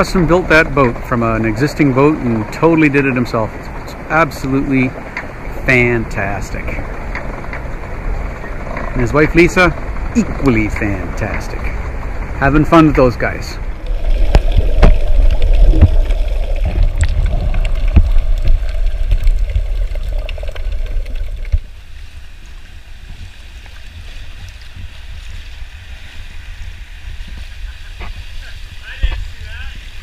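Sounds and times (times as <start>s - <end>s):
wind and water rumbling: 0.0s - 30.0s.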